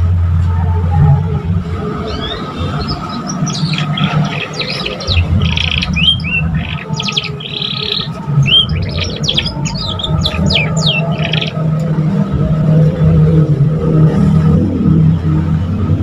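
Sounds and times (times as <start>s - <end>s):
low hum: 0.0s - 16.0s
canary singing: 1.8s - 11.8s.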